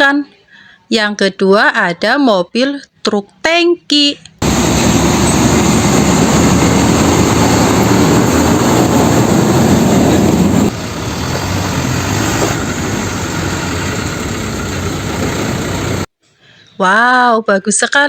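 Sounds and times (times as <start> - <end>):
heavy truck engine running: 4.4 - 16.1.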